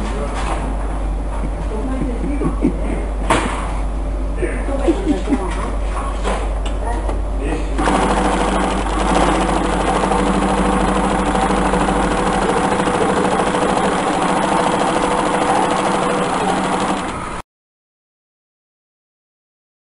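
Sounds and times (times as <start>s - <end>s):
sewing machine running steadily: 7.8s - 17.4s.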